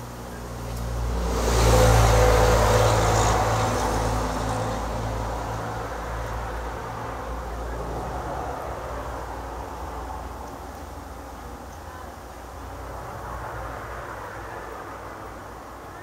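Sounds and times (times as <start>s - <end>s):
motor vehicle passing by: 0.2s - 11.2s.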